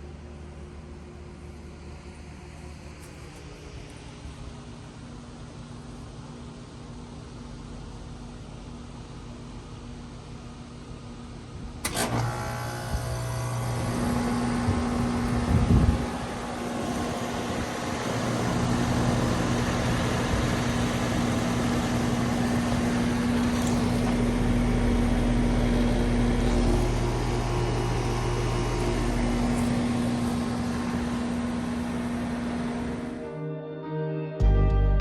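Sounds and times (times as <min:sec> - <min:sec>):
heat pump unit humming: 0:00.0 - 0:33.3.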